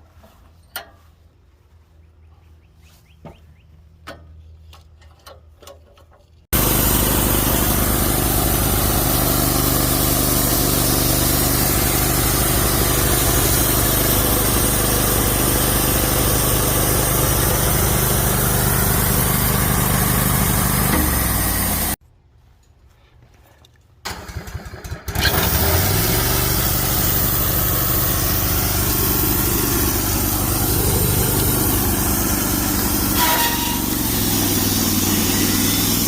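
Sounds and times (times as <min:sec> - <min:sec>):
band sawmill running: 0:06.5 - 0:22.0, 0:24.4 - 0:36.0.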